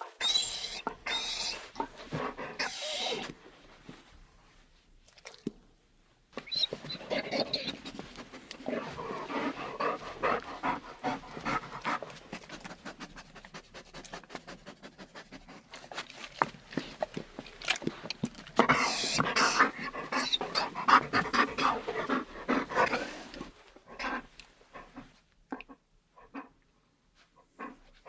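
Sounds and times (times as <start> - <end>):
dog whining: 0.0 - 2.0, 2.6 - 3.4, 6.4 - 8.0
dog panting: 0.1 - 3.3, 6.5 - 25.2, 27.2 - 28.0.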